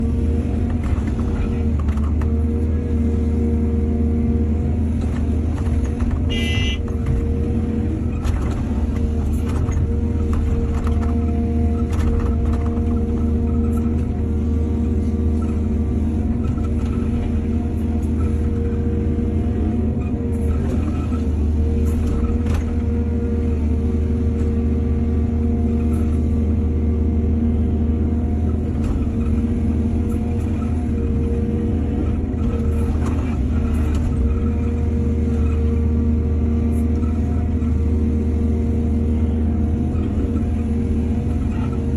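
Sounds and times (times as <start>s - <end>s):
excavator diesel engine under load: 0.0s - 41.9s
brief high tone: 6.3s - 6.8s.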